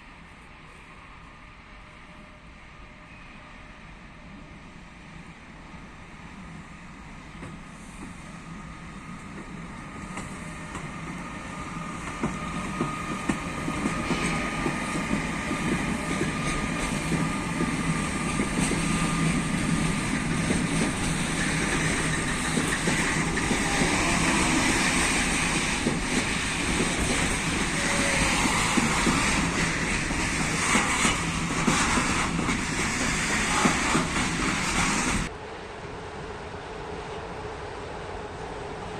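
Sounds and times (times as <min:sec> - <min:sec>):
train running past on track: 0:00.0 - 0:38.9
wheels clicking over rails: 0:12.0 - 0:35.3.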